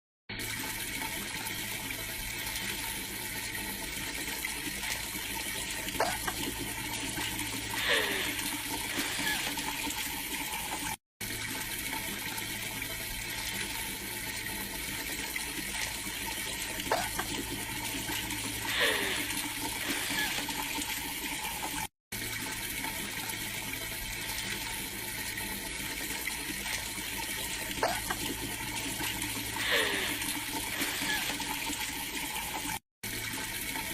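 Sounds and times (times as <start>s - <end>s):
running water hiss: 5.2s - 10.8s, 15.7s - 21.7s, 26.5s - 32.6s.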